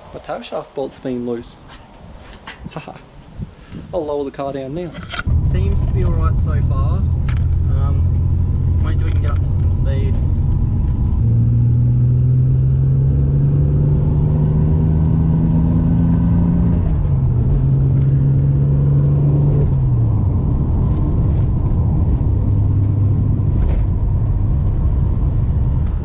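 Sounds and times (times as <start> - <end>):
car engine accelerating through gears: 5.2 - 26.0.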